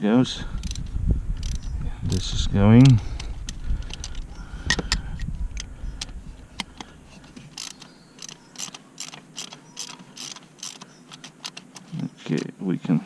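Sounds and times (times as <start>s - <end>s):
ratchet clicking: 0.6s - 1.7s, 7.4s - 11.6s.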